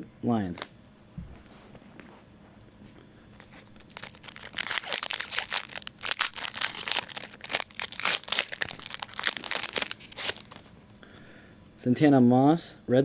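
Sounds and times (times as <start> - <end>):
wrapper crinkling and tearing: 3.4 - 10.7.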